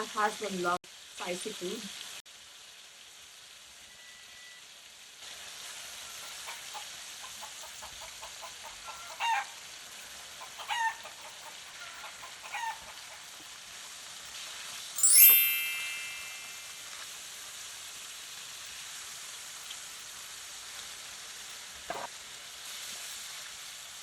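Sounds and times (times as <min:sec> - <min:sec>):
chicken searing in hot oil: 0:00.0 - 0:15.0, 0:16.8 - 0:24.0
chicken cackling: 0:05.8 - 0:13.4.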